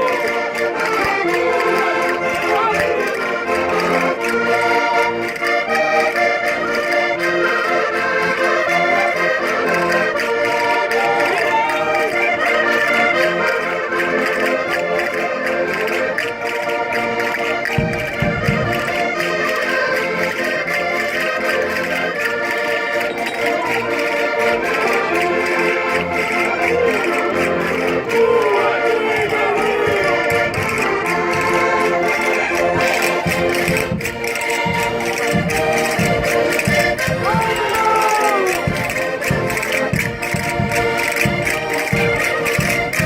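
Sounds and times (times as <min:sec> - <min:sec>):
button accordions playing folk tune: 0:00.0 - 0:43.0.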